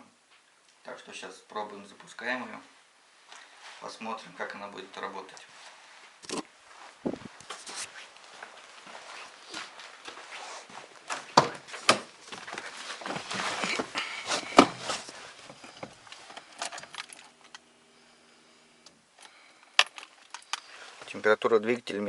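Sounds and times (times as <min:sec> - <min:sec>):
steady low hum: 0:10.7 - 0:21.5.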